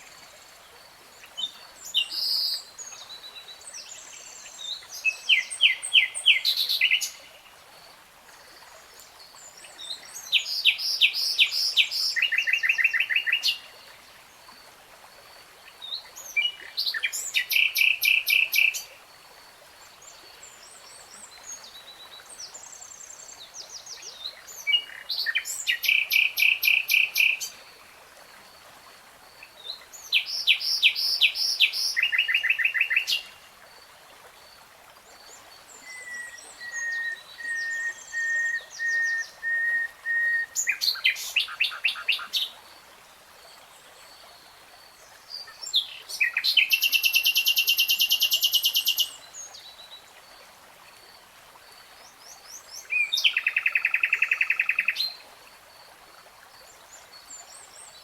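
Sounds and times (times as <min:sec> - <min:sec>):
songbird singing: 0:20.2 - 0:27.7, 0:29.6 - 0:33.4, 0:35.3 - 0:42.6, 0:43.6 - 0:50.1, 0:52.0 - 0:55.2.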